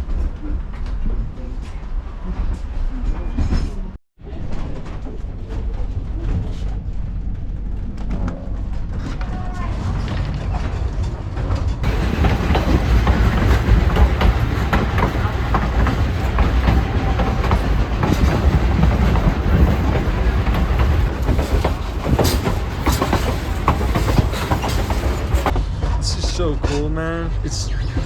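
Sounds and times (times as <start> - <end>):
train rumbling along track: 0.0 - 28.0
wheels clacking over rails: 10.8 - 25.6.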